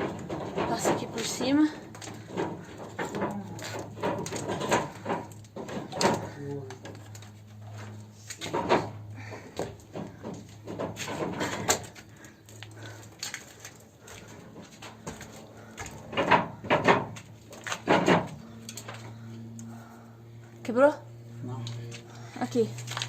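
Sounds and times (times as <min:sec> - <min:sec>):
low steady hum: 0:00.0 - 0:23.0
electrical wire rustling: 0:21.6 - 0:23.0.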